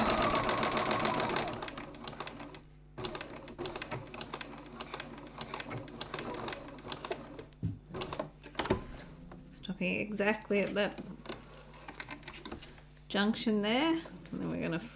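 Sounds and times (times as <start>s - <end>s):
sewing machine stitching: 0.0s - 8.6s.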